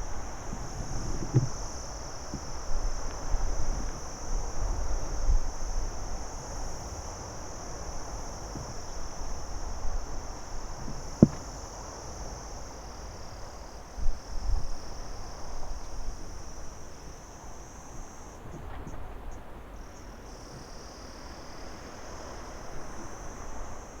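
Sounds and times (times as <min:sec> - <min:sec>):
crickets chirping: 0:00.0 - 0:24.0.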